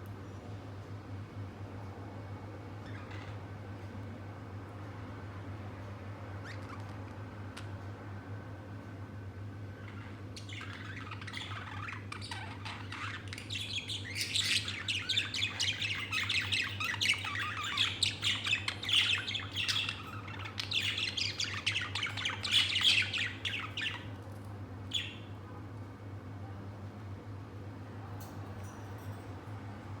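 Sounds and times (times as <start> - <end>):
budgerigar warbling and chirping: 9.8 - 24.1, 24.9 - 25.3.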